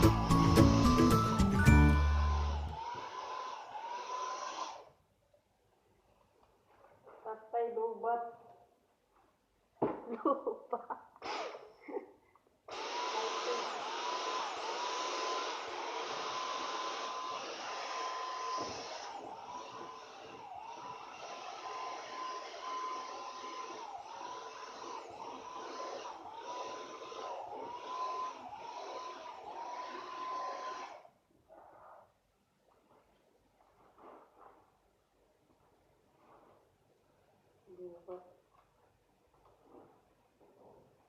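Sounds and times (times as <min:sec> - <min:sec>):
vacuum cleaner motor whine: 0:00.0 - 0:04.9, 0:12.7 - 0:31.1.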